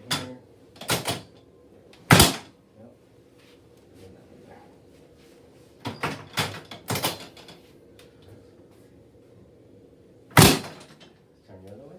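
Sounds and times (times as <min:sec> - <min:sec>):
treatment table knocking and creaking: 0:00.0 - 0:01.3, 0:02.1 - 0:02.5, 0:05.8 - 0:07.6, 0:10.4 - 0:11.1
sharp loud thud: 0:10.4 - 0:10.8.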